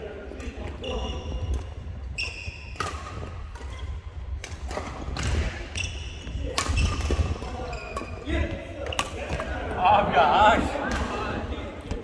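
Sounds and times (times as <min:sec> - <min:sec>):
shoes squeaking on court floor: 0:00.3 - 0:09.6
racket striking shuttlecock: 0:02.7 - 0:03.7, 0:06.5 - 0:08.1.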